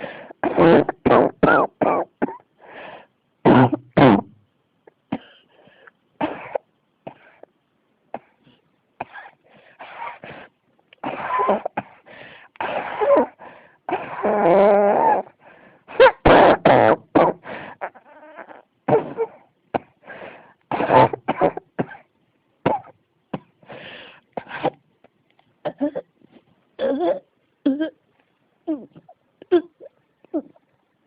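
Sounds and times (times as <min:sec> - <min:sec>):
person coughing: 0:11.0 - 0:12.0.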